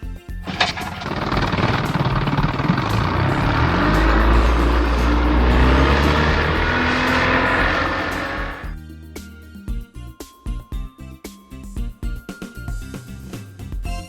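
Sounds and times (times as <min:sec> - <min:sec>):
jet boat engine at high speed: 0:00.5 - 0:08.7.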